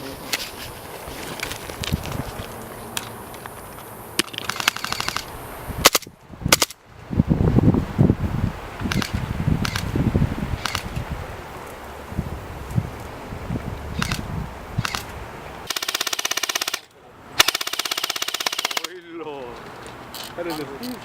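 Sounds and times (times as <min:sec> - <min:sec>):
airsoft gun shots: 0:04.2 - 0:06.8, 0:15.7 - 0:18.9
low rumbling on microphone: 0:05.4 - 0:15.6.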